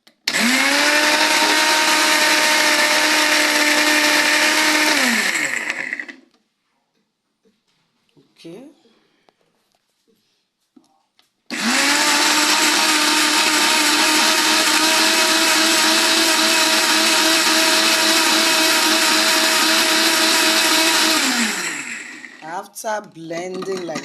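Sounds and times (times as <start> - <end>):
electric blender motor whining: 0.2 - 6.3, 11.5 - 22.5.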